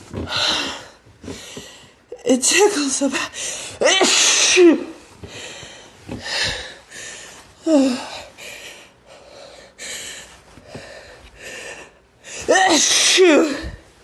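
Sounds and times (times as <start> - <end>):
woman gasping breaths: 5.2 - 12.5.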